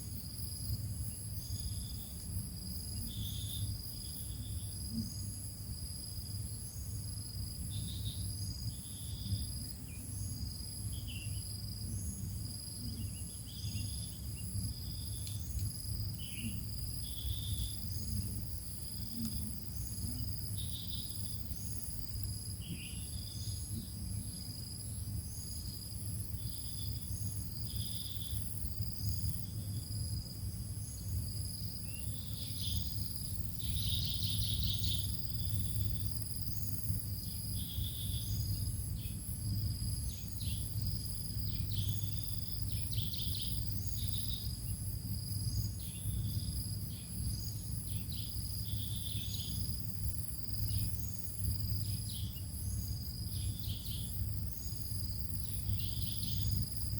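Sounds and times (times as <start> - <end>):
constant low hum: 0.0 - 56.9
high-pitched insect trill: 0.0 - 56.9
short insect chirps: 30.8 - 39.2.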